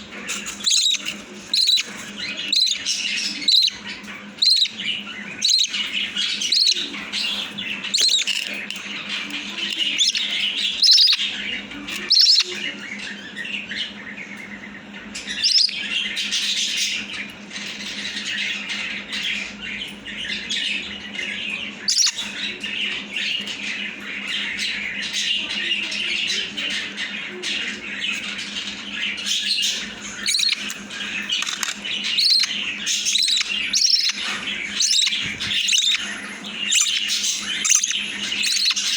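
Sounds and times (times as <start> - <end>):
steady low hum: 0.0 - 38.9
chick raspy begging chirps: 0.6 - 3.8.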